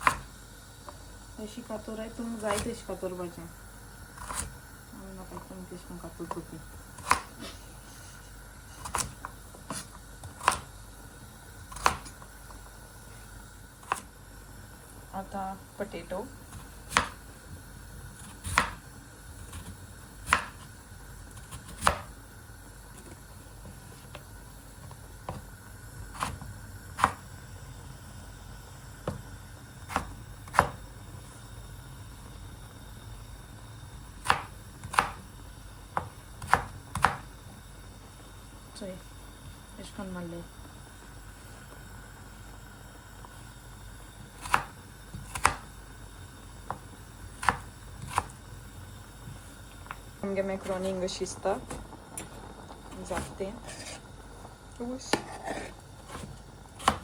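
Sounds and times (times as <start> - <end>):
knife chopping potatoes: 0.0 - 0.4, 2.2 - 3.1, 4.1 - 4.6, 5.2 - 7.6, 8.8 - 10.8, 11.6 - 12.6, 13.7 - 14.2, 16.4 - 22.2, 22.9 - 27.3, 29.0 - 30.9, 34.2 - 35.3, 35.9 - 37.3, 44.4 - 45.8, 46.6 - 48.4, 55.1 - 57.0.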